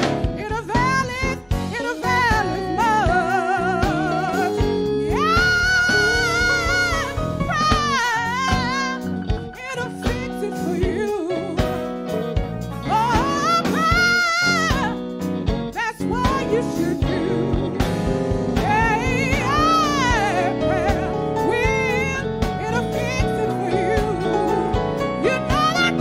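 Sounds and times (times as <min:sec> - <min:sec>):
band with steady drum beat: 0:00.0 - 0:26.0
person singing long notes: 0:01.9 - 0:09.0.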